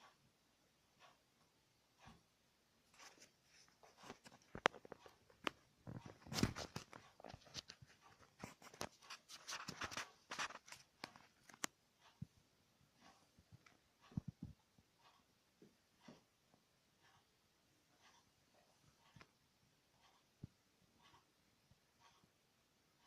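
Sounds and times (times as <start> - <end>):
scratchy rustles: 2.9 - 11.6.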